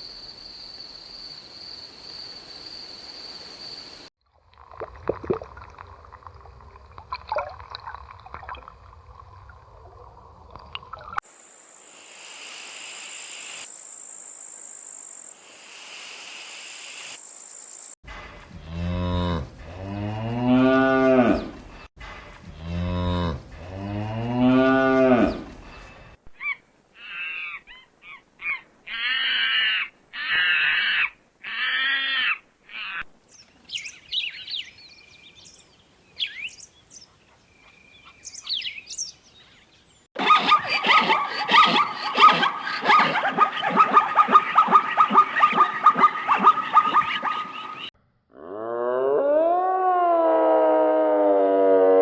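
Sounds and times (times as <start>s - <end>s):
cow mooing: 18.2s - 21.8s, 22.4s - 25.8s
harsh bird calls: 24.9s - 40.1s
thin bird chirps: 33.2s - 40.1s.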